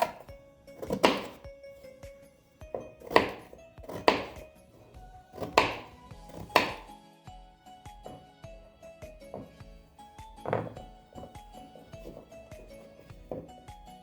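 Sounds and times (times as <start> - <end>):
soft background music: 0.0 - 14.0
dull knocks on hard surface: 2.7 - 4.4, 5.4 - 6.9, 9.3 - 9.6, 10.4 - 13.6.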